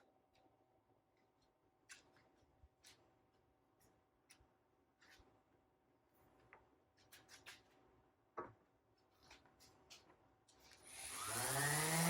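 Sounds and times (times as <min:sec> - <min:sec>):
power tool motor whining: 0:10.9 - 0:12.0.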